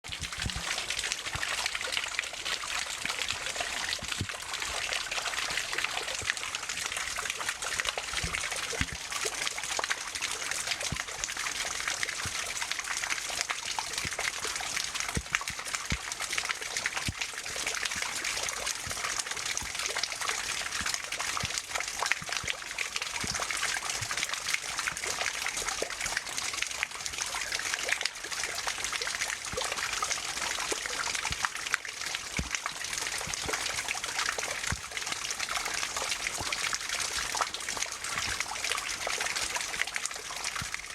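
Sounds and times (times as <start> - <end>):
water trickling: 0.0 - 40.9
small clicks and pops: 0.1 - 1.5, 8.1 - 9.1.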